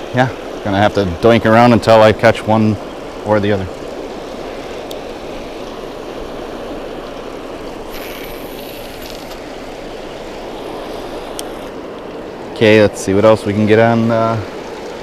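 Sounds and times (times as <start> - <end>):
water pouring over a spillway: 7.9 - 10.0.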